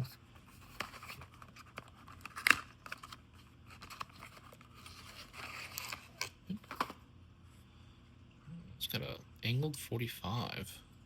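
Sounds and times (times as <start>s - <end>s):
cardboard box packaging rustling: 0.5s - 7.0s.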